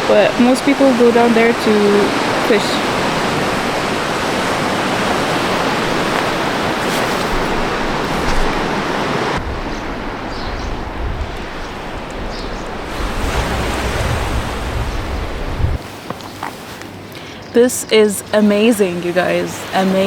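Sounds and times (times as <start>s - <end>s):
wind rumbling on microphone: 0.0s - 15.9s
sea surf washing: 0.0s - 17.1s.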